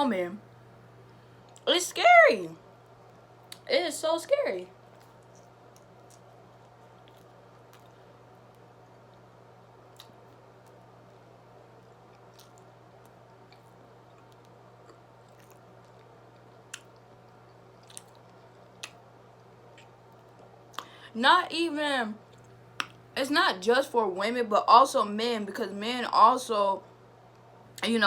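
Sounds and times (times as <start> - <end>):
steady low hum: 0.0 - 28.0
chewing food: 4.8 - 21.0.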